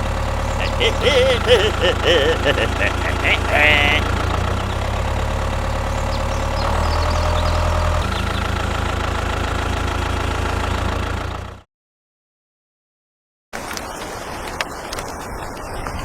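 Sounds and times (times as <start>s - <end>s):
small engine idling: 3.8s - 11.6s.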